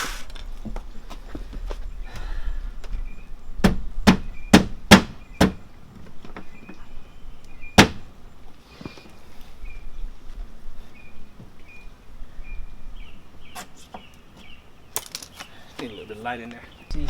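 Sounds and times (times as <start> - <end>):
sharp knocks on plastic panel: 3.6 - 5.6, 7.8 - 8.1.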